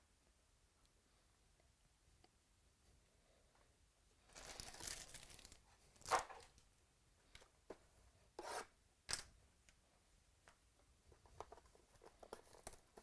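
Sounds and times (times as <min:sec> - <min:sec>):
packaging tearing: 0:04.3 - 0:06.2
packaging rustling: 0:04.3 - 0:06.6.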